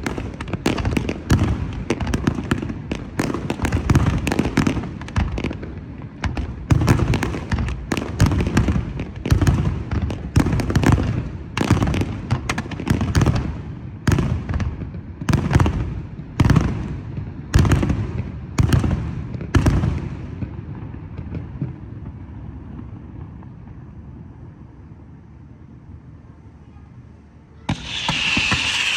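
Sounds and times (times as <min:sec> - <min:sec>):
fireworks bangs: 0:00.0 - 0:13.5, 0:27.7 - 0:28.9.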